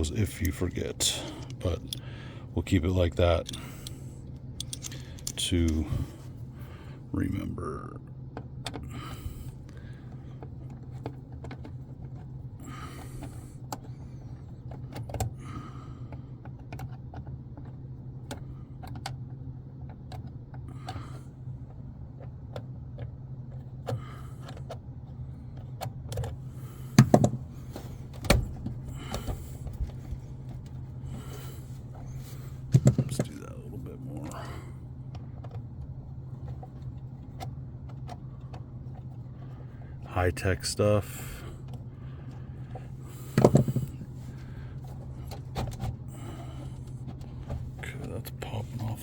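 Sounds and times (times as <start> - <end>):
steady low hum: 0.0 - 49.0
small metallic clicks and rattles: 4.6 - 5.8.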